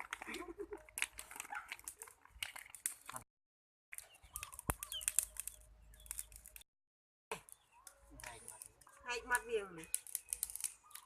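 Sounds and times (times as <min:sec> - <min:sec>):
sharp clicks and crackles: 0:00.0 - 0:03.2, 0:03.9 - 0:06.6, 0:07.3 - 0:11.0
small birds chirping: 0:03.9 - 0:06.6, 0:07.4 - 0:11.0.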